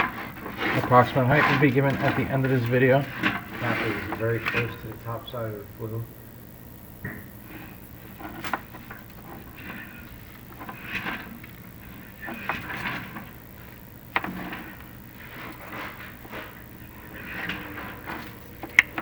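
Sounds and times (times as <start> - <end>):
camera scraping inside a flue: 0.0 - 19.0.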